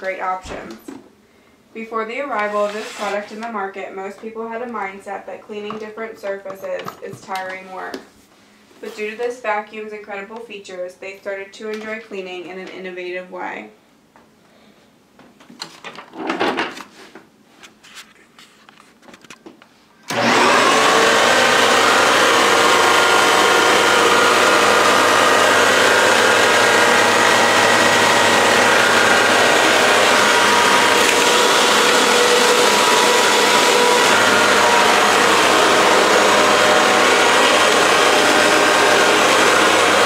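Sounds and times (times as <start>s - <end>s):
vacuum cleaner running: 2.3s - 3.4s, 20.1s - 40.0s.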